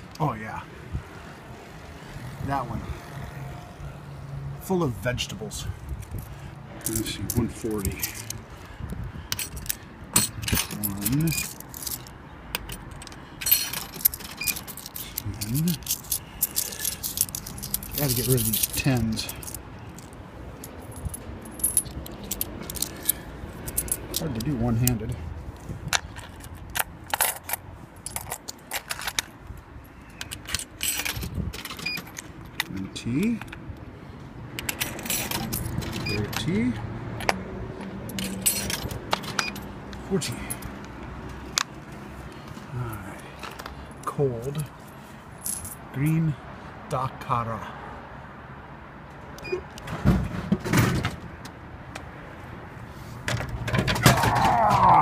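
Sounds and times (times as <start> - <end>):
coins clinking into coin slot: 9.4 - 19.6, 30.2 - 32.3, 34.6 - 36.5, 38.1 - 39.7.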